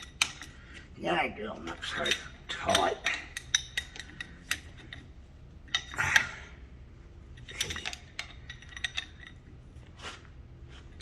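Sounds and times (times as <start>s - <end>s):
metal tools clinking on bolts: 1.6s - 5.1s, 7.3s - 9.6s.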